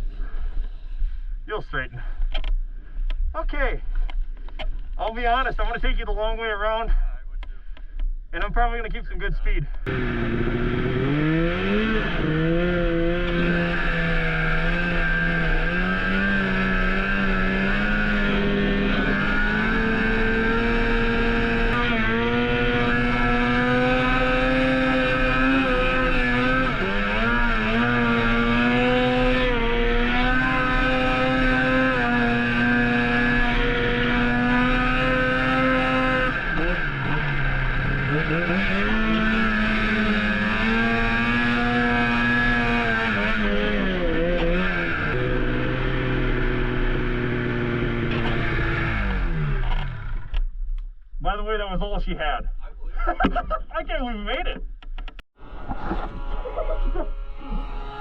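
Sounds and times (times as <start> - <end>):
snowmobile engine at high revs: 9.8 - 50.4, 55.4 - 58.0.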